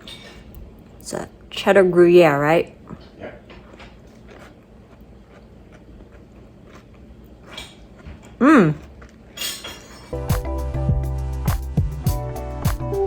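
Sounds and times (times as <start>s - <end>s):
person humming mm: 8.4s - 8.9s
guitar music: 10.2s - 13.0s.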